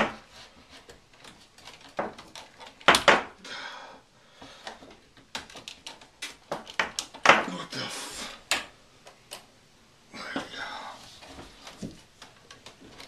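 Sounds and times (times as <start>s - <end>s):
scraping rustle: 0.0s - 2.9s.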